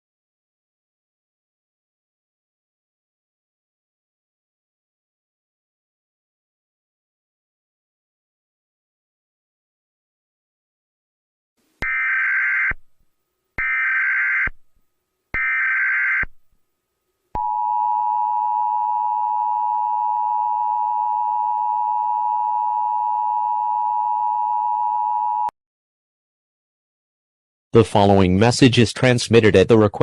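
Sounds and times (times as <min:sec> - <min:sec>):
steady two-tone attention signal: 0:17.4 - 0:25.5.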